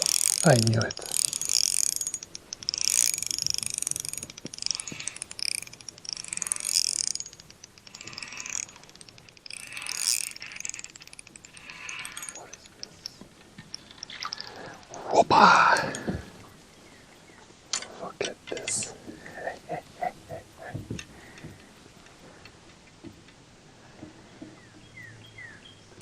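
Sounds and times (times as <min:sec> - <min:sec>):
fishing reel drag clicking: 0:00.0 - 0:16.5.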